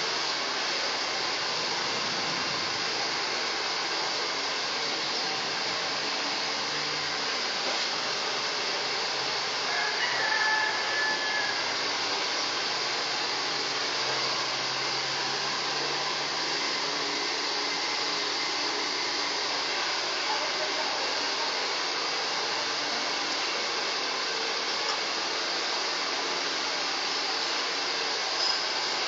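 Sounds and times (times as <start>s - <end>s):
hair dryer blowing: 0.0s - 29.0s.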